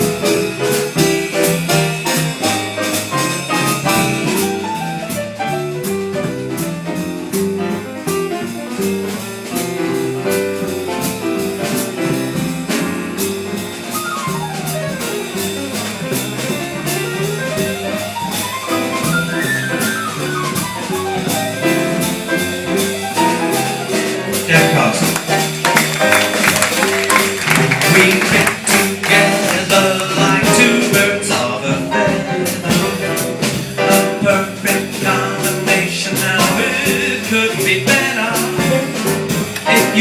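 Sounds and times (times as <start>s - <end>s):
quick runs of notes: 0.0s - 31.3s
bass line: 0.0s - 40.0s
drum kit cymbals: 0.0s - 40.0s.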